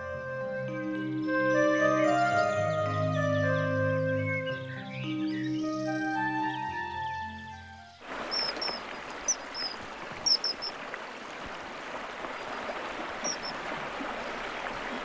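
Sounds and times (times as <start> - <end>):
soft music: 0.0 - 8.8
small bird chirping: 8.0 - 11.0, 12.2 - 14.4
stream running: 8.0 - 15.0.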